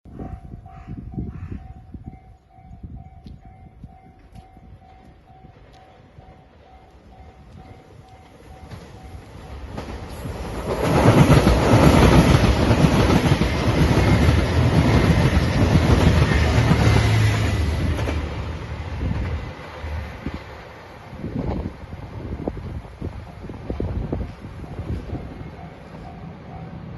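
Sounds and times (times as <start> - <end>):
wind buffeting microphone: 0.1 - 26.9
diesel train passing: 0.2 - 26.9
level crossing warning bell: 0.3 - 9.6, 22.5 - 26.9.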